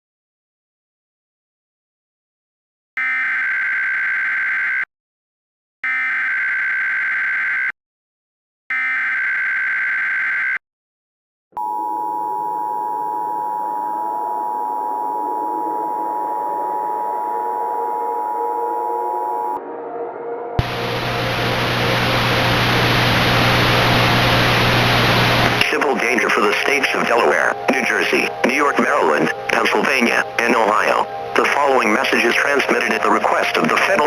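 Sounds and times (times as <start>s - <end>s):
noisy hiss: 20.6s - 34.0s.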